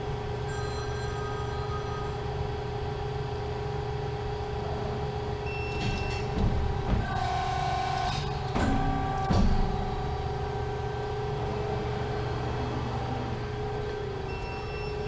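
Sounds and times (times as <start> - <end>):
hydraulic pump humming: 4.7 - 15.0
machine clunks and knocks: 5.5 - 10.4.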